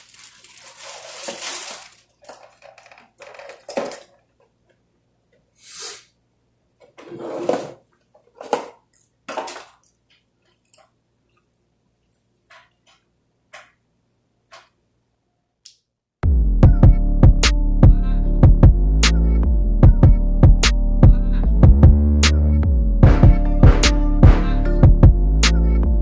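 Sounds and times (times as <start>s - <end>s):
takeout containers rustling and clattering: 0.0s - 4.4s, 6.8s - 10.8s.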